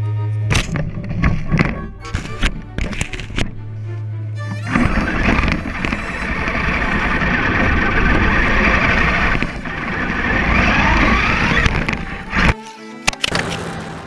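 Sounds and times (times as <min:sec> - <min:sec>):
electric motor whining: 0:04.4 - 0:14.0.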